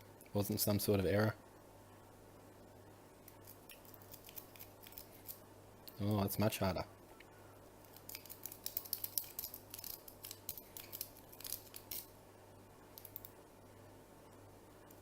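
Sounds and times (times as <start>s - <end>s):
lock pick clicks and scrapes: 3.4s - 5.4s, 7.9s - 12.1s.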